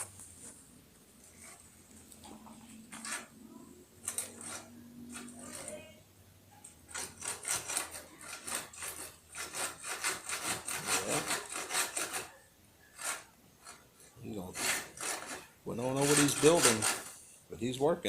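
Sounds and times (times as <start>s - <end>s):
hand saw cutting wood: 4.1s - 5.7s, 6.9s - 17.2s.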